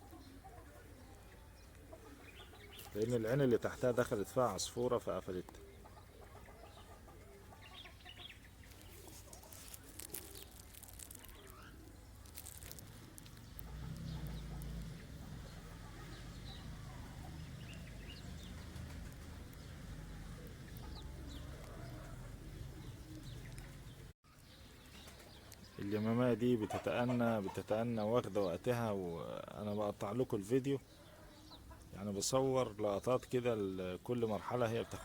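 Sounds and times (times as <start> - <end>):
bird calls: 0.0 - 35.0
soft rustles: 8.6 - 14.8.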